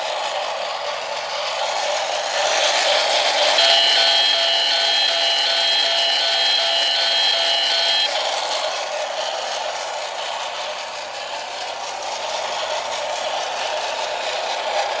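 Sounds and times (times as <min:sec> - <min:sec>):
toy motor whirring: 0:00.0 - 0:15.0
high electronic tone: 0:03.6 - 0:08.1.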